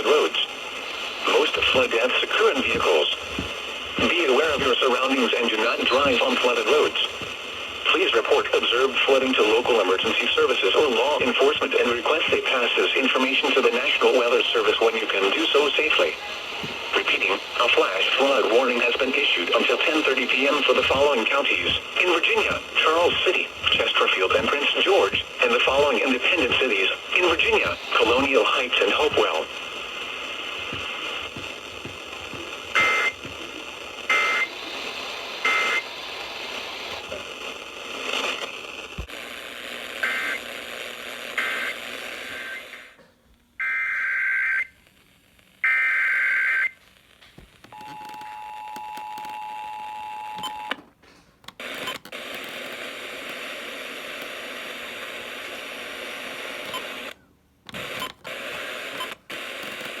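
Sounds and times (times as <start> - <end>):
radio hiss: 0.0 - 43.2, 51.6 - 60.0
data bursts: 30.1 - 34.5.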